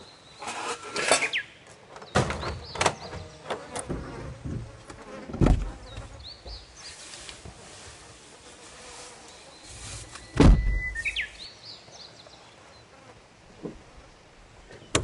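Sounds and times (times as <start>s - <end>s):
rustle: 0.0s - 15.0s
heavy low thump: 10.4s - 11.0s.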